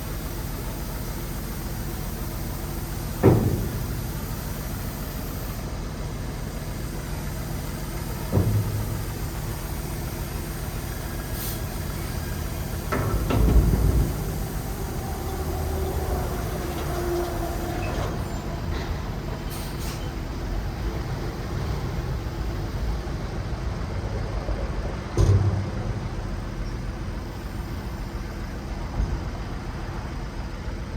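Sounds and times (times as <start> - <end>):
dump truck diesel engine running: 0.0 - 30.9
loud clunk: 8.3 - 9.1, 12.8 - 14.4, 25.2 - 26.2.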